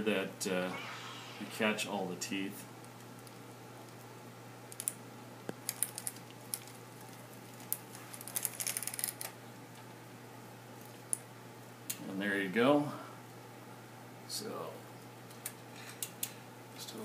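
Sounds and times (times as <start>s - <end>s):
steady low hum: 0.0s - 8.2s.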